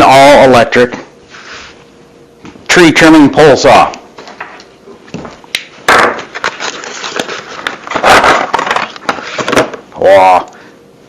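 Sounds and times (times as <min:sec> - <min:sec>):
packaging rustling and scraping: 0:06.2 - 0:09.7.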